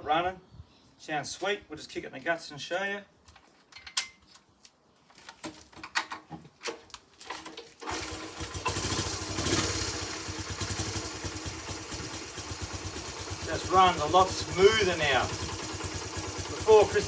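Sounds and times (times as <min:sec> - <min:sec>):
motorcycle engine idling: 0:07.9 - 0:17.0.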